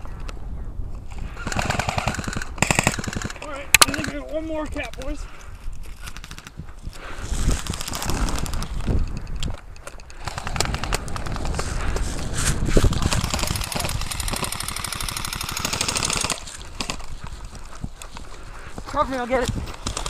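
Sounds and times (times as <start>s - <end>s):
airsoft guns firing rapidly: 1.4s - 4.2s, 12.9s - 17.0s.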